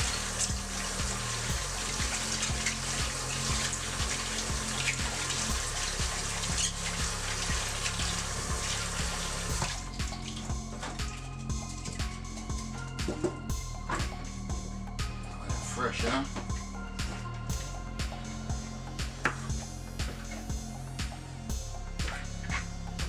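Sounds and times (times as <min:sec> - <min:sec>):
tap water running into sink: 0:00.0 - 0:10.3
background music with beat: 0:00.0 - 0:23.0.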